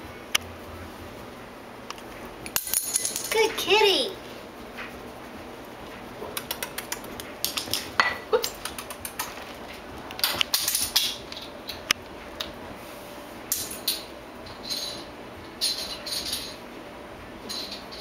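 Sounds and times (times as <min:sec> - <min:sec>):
bottle cap skittering on floor: 0:02.6 - 0:03.4.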